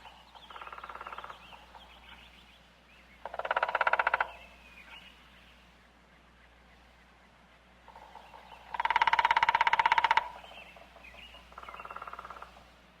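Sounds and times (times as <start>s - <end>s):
woodpecker drumming on wood: 0.0s - 1.8s, 3.2s - 4.4s, 7.9s - 12.6s
faint bird chirps: 0.0s - 12.7s.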